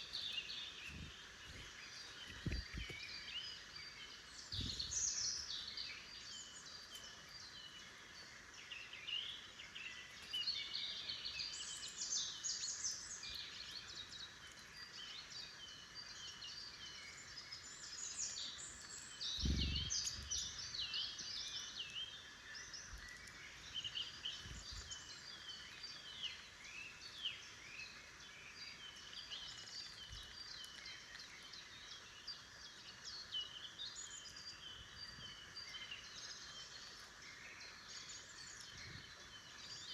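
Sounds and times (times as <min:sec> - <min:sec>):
songbirds singing and calling: 0:00.0 - 0:39.9.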